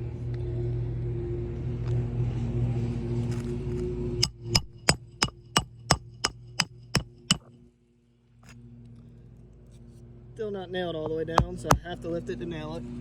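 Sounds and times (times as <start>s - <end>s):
mechanical hum: 0.0s - 13.0s
hammer striking nail: 4.2s - 7.5s, 11.3s - 11.9s.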